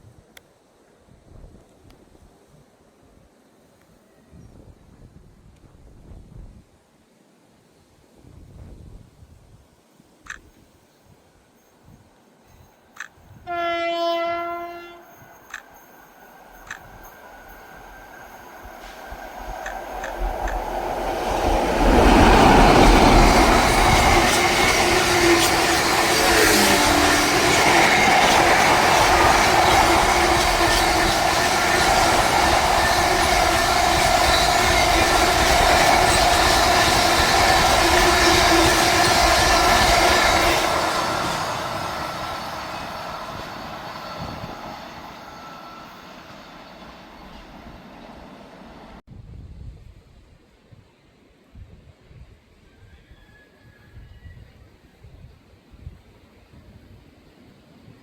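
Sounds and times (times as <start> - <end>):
train passing on rails: 11.5 - 49.0.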